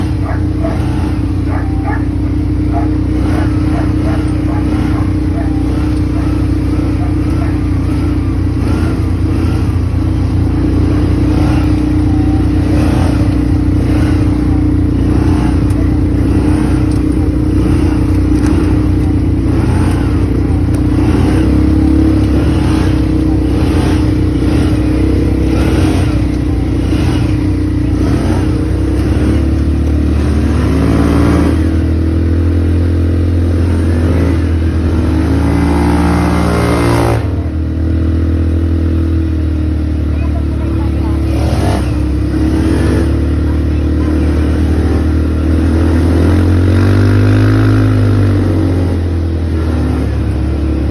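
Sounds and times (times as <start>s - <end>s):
regular clatter: 0.0s - 36.0s
atv engine running: 0.0s - 50.9s.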